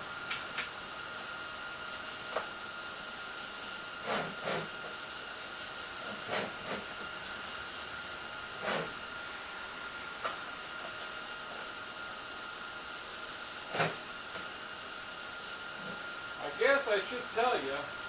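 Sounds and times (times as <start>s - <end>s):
steady hiss: 1.7s - 18.0s
faint high whine: 15.4s - 18.0s.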